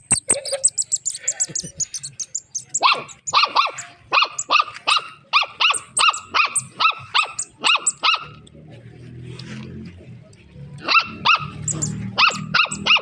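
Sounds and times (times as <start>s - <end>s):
dog yapping: 2.7s - 8.3s, 10.8s - 13.0s.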